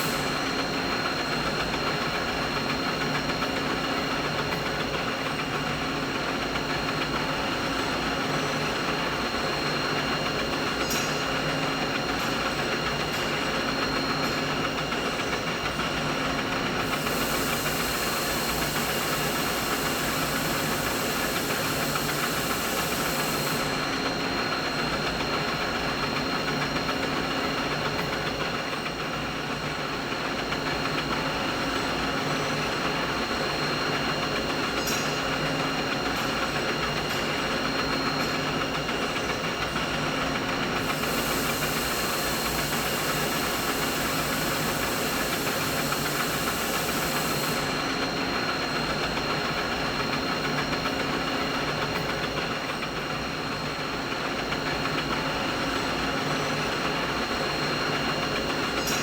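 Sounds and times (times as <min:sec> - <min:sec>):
high hiss: 0:16.9 - 0:23.9, 0:40.8 - 0:48.0.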